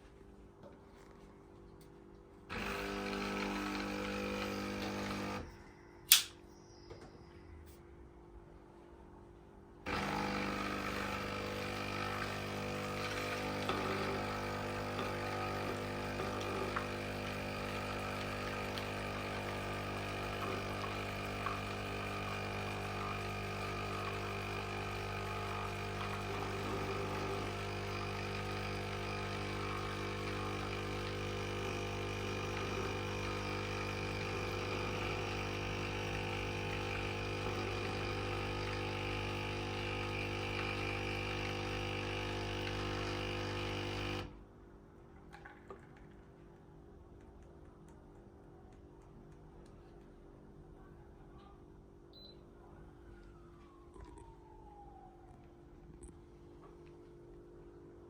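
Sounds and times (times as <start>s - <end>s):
coffee machine pump humming: 2.4s - 5.6s, 9.8s - 44.4s.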